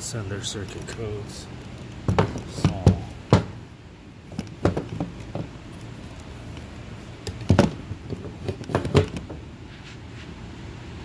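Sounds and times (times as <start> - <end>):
low background noise: 0.0 - 11.0
dull knocks and clunks: 2.1 - 3.6, 4.3 - 5.6, 7.2 - 9.4.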